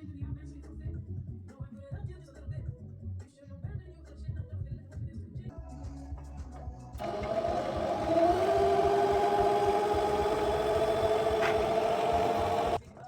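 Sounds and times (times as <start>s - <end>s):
sewing machine motor humming: 7.0s - 12.8s.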